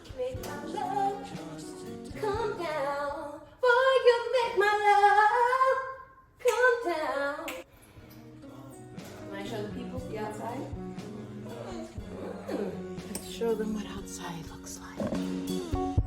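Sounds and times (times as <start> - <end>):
song with singing voice: 0.0 - 5.8.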